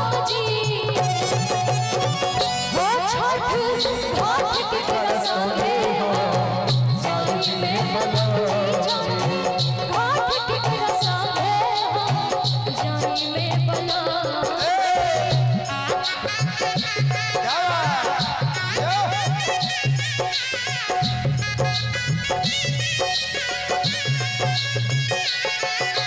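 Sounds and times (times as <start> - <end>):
bass: 0.0 - 4.4, 15.0 - 26.0
steady percussion beat: 0.0 - 26.0.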